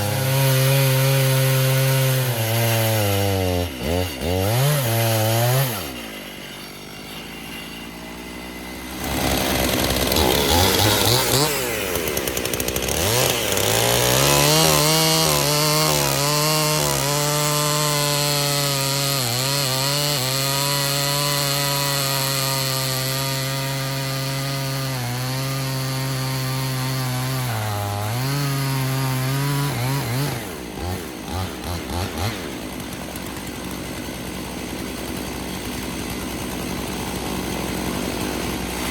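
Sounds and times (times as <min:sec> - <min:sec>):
chainsaw idling and revving: 0:00.0 - 0:38.9.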